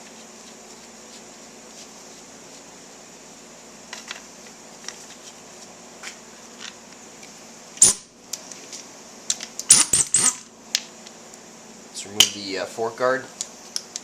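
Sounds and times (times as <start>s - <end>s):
sharp metallic clink: 7.8s - 8.1s, 9.7s - 10.4s.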